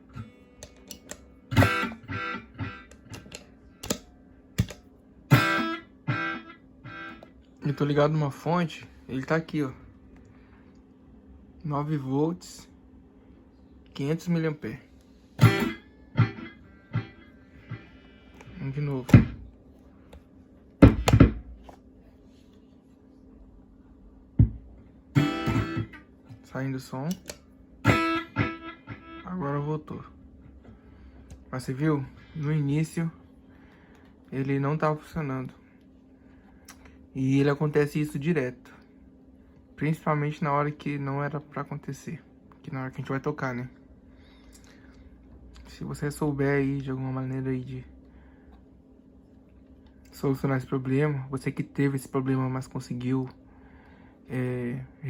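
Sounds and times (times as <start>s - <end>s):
guitar chords with delay repeats: 0.0s - 4.0s, 4.6s - 7.3s, 15.4s - 18.0s, 25.2s - 26.0s, 27.8s - 29.4s
steady low hum: 0.0s - 55.0s
guitar gear thunks: 19.0s - 19.4s, 20.8s - 21.6s.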